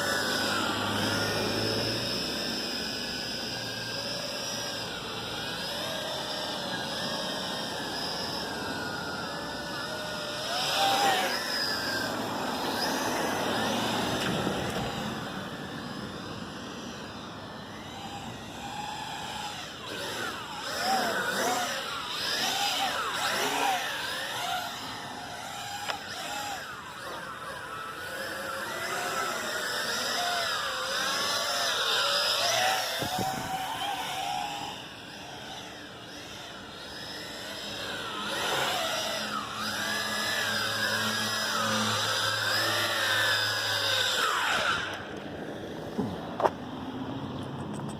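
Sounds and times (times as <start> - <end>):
toy drone propellers whining: 0.0 - 47.9.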